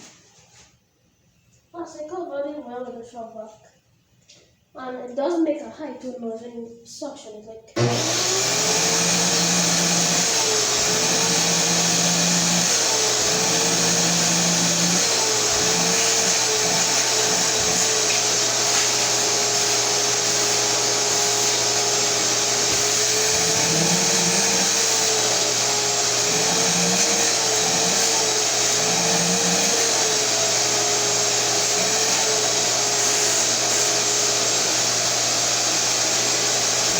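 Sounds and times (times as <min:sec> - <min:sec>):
wet dry vacuum running: 0:07.8 - 0:36.9.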